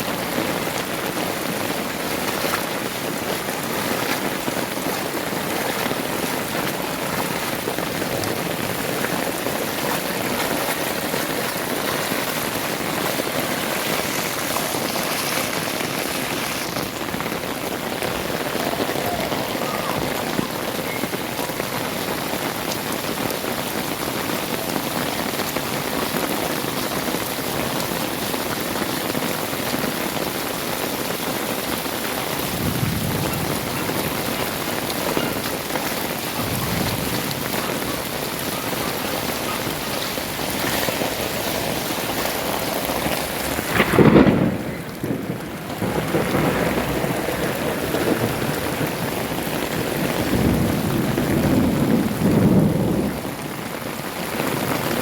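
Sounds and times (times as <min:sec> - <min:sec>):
heavy rain: 0:00.0 - 0:55.0
low thunder rumbling: 0:32.2 - 0:54.9
loud thunderclap: 0:32.3 - 0:35.3, 0:36.2 - 0:53.7.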